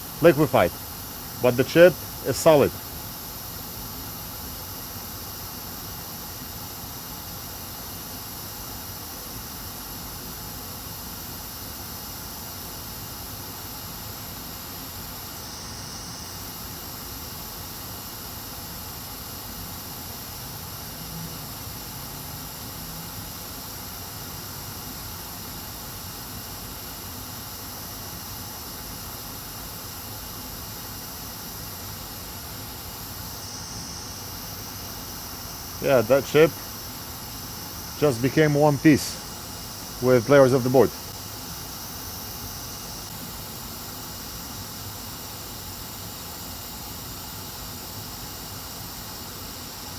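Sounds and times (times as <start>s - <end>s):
hot-air station hissing: 0.0s - 3.9s, 32.1s - 43.0s.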